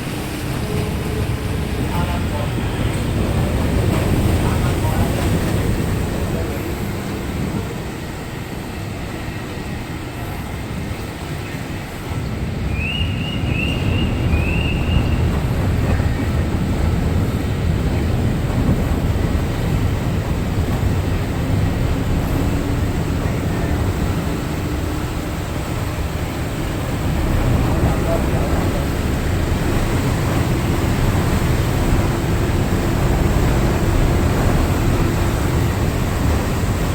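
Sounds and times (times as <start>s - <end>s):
ferry engines rumbling: 0.0s - 36.9s.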